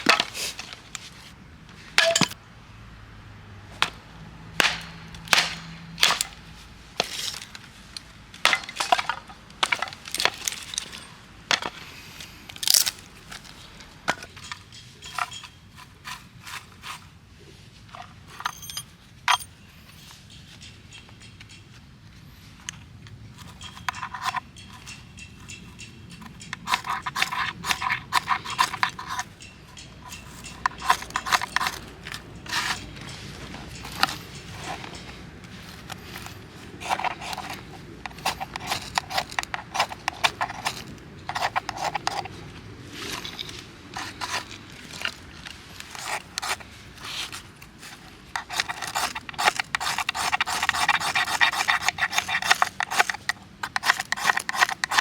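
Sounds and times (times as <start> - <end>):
hand scraping strokes: 23.4 - 55.0.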